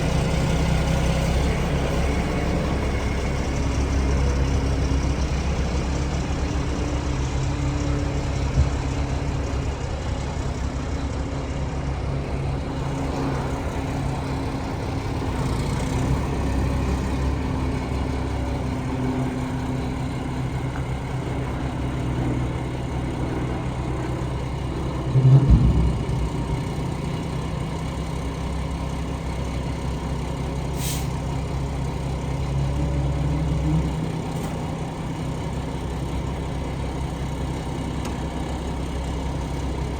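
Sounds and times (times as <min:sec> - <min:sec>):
heavy engine running: 0:00.0 - 0:39.9
loud knock: 0:25.1 - 0:27.3.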